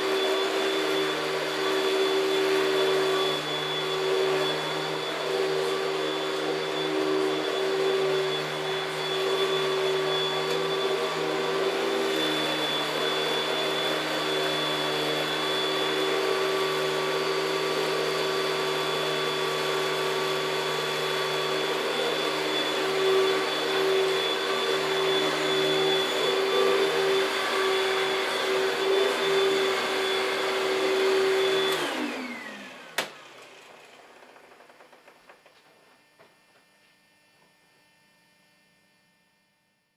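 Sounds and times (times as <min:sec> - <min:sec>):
vacuum cleaner whining: 0:00.0 - 0:38.9.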